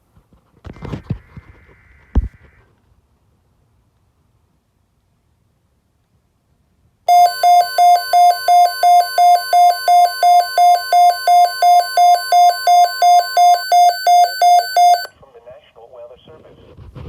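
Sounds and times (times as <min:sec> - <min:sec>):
electronic alarm beeping: 0:07.1 - 0:15.1.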